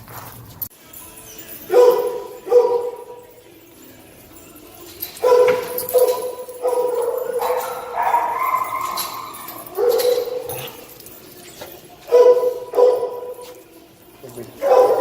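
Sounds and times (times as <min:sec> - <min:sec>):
dogs barking howl-like: 0:01.7 - 0:03.2, 0:05.2 - 0:10.8, 0:12.1 - 0:13.4, 0:14.6 - 0:15.0.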